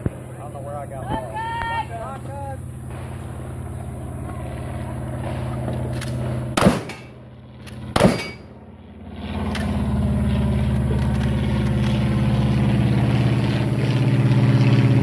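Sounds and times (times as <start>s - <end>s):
engine running: 0.0s - 15.0s
loud gunshots: 6.5s - 7.2s, 7.9s - 8.5s.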